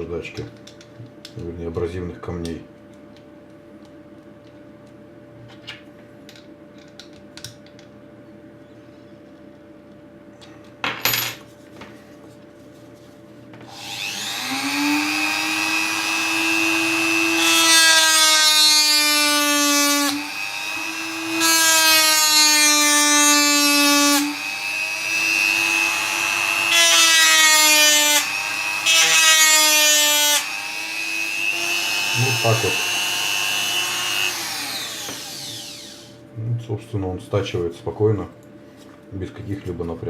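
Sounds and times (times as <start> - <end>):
rotary tool motor whine: 13.7 - 36.2.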